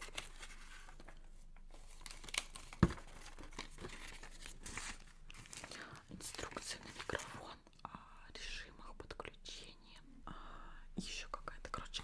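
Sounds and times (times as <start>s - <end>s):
packaging crinkling and tearing: 0.0s - 7.0s.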